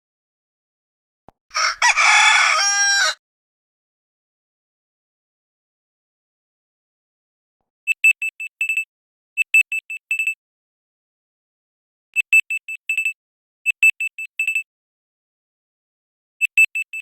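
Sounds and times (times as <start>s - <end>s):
high electronic alarm beeps: 7.9s - 10.4s, 12.2s - 14.6s, 16.4s - 17.0s.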